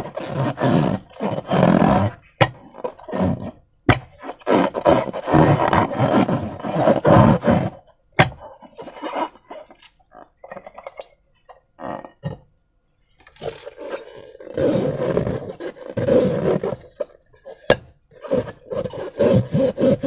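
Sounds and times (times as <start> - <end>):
slime balloons squelching: 0.0 - 12.4, 13.3 - 20.0.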